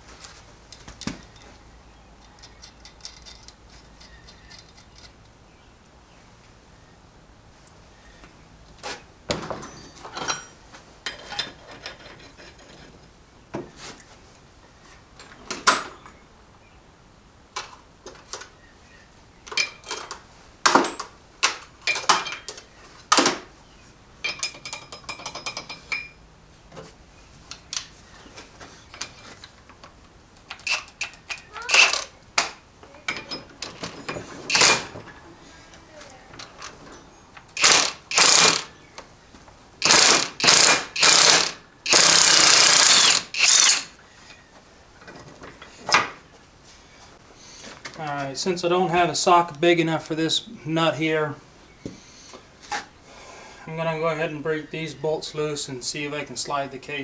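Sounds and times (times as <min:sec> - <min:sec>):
metal tools clinking: 0:02.2 - 0:05.2, 0:30.5 - 0:32.5, 0:33.1 - 0:35.0, 0:36.7 - 0:38.7, 0:39.8 - 0:44.0.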